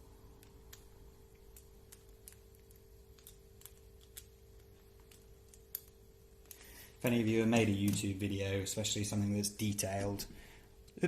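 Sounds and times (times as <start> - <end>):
steady low hum: 0.0 - 11.0
light clicks of small parts: 0.4 - 6.7.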